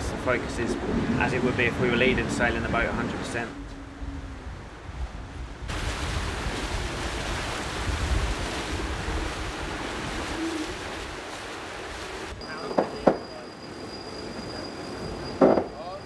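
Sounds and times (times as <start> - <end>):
wind buffeting the microphone: 0.0 - 11.3
water rushing along a hull: 0.0 - 16.0.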